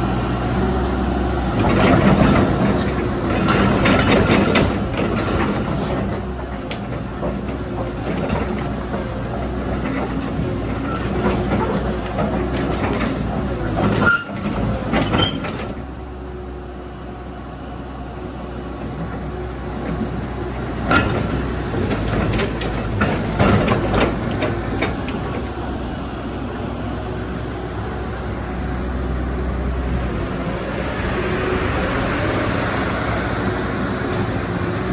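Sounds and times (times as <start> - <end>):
diesel engine running: 0.0 - 34.9
metallic clanks and knocks: 1.6 - 15.8, 19.8 - 25.6.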